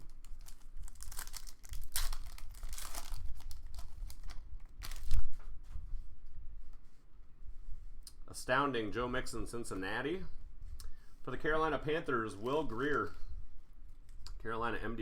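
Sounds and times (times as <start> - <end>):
foil wrapper tearing and crinkling: 0.0 - 5.3.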